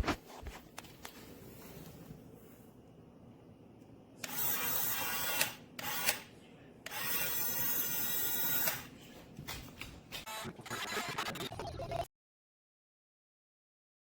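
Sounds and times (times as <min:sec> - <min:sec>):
toy motor whirring: 0:04.2 - 0:06.2, 0:06.9 - 0:08.9.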